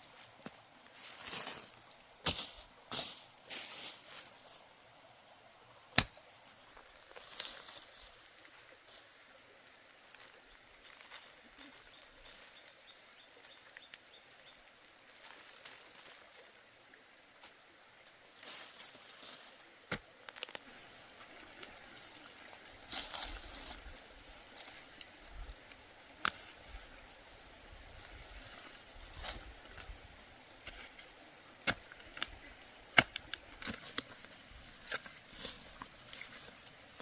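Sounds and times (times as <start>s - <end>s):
rustling: 18.4s - 27.2s.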